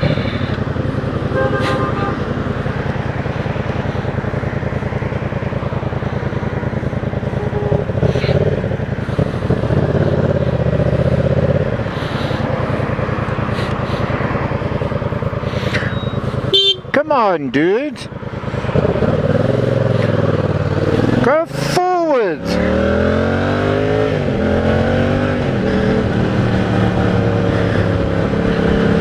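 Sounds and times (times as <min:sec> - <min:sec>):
motorcycle engine running: 0:00.0 - 0:29.0
wind and road noise: 0:00.0 - 0:29.0
horn toot: 0:01.3 - 0:02.2, 0:16.5 - 0:16.9.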